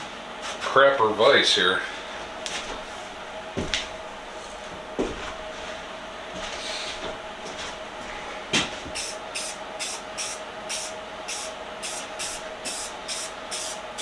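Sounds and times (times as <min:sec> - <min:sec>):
spray-paint can spraying: 0:09.0 - 0:13.8.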